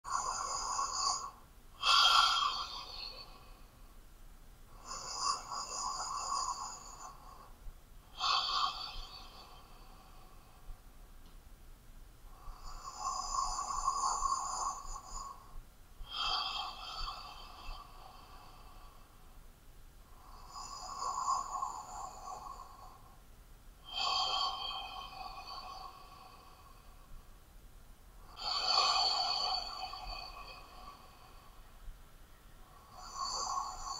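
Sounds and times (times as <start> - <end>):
person breathing heavily: 0.1 - 4.0, 4.7 - 11.0, 12.3 - 19.4, 28.2 - 31.9.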